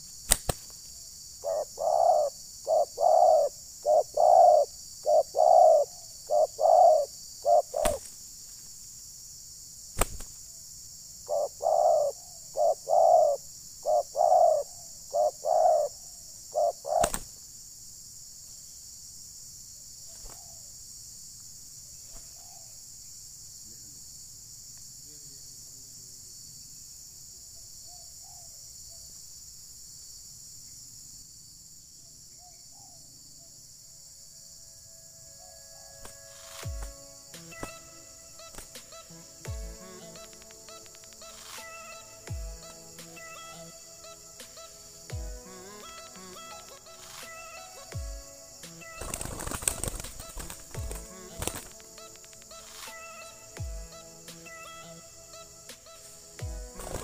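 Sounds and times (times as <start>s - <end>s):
faint chirps: 0.0s - 8.8s, 11.2s - 17.5s, 32.0s - 57.0s
steady high hiss: 0.0s - 21.9s, 33.9s - 57.0s
doves cooing: 1.4s - 8.1s, 11.3s - 17.3s, 35.4s - 57.0s.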